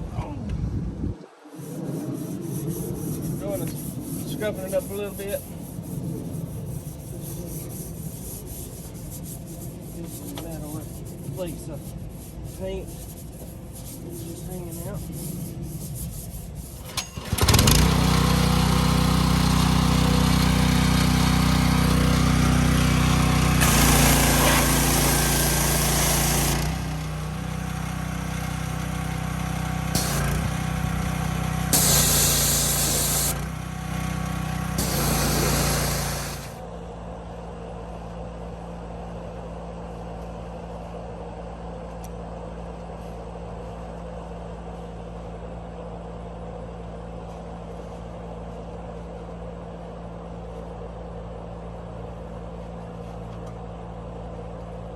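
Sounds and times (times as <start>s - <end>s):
small engine running: 16.8s - 36.6s
loud hissing blast: 29.9s - 30.5s, 31.7s - 33.4s, 34.7s - 36.6s.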